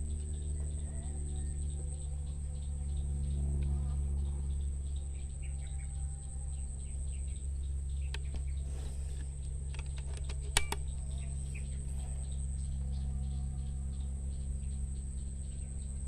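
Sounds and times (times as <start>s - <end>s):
steady low hum: 0.0s - 16.0s
faint bird chirps: 0.2s - 16.0s
sharp clicks: 8.1s - 8.5s, 9.2s - 11.1s.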